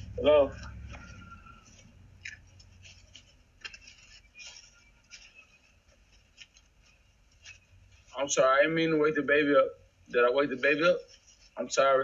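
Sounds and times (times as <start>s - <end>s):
faint clicks and rustles: 0.0s - 8.9s, 9.8s - 12.0s.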